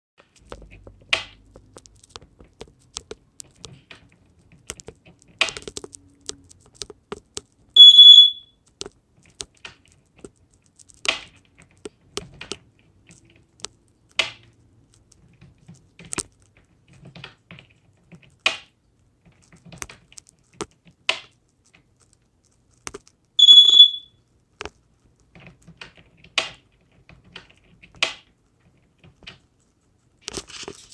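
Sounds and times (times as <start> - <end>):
high beep: 7.8 - 8.5, 23.4 - 24.1.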